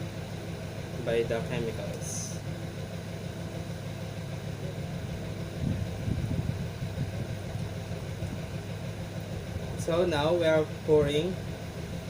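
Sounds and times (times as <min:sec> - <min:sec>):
low mechanical hum: 0:00.0 - 0:12.0
irregular low rumbling: 0:04.4 - 0:12.0.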